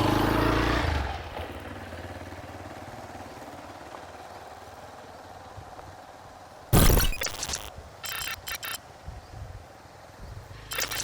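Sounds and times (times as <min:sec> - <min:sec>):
steady background noise: 0:05.8 - 0:11.0.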